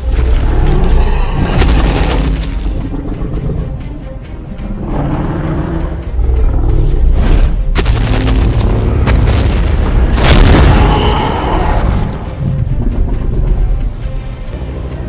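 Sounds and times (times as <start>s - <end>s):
orchestral music: 0.0s - 15.0s
heavy booms and impacts: 7.2s - 12.4s
loud explosive blast: 7.8s - 11.3s.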